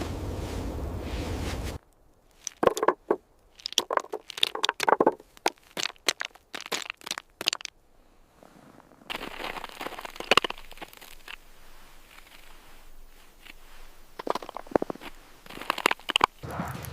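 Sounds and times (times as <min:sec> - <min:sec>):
sharp crunching cracks: 0:01.8 - 0:07.8, 0:09.1 - 0:16.9.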